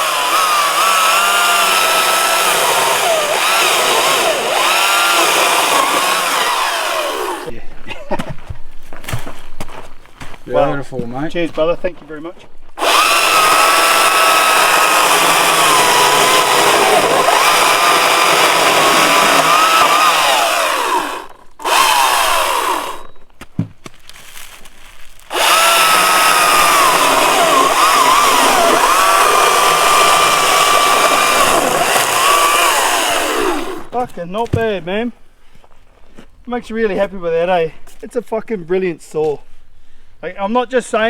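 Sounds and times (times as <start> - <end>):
chainsaw cutting wood: 0.0 - 7.5, 12.8 - 23.2, 25.2 - 34.7
chainsaw whining: 0.0 - 7.5, 12.8 - 23.2, 25.2 - 34.1.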